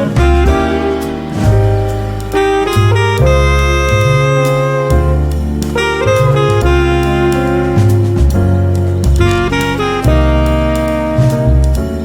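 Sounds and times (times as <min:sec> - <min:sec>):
bass line: 0:00.0 - 0:12.0
saxophone melody: 0:00.0 - 0:12.0.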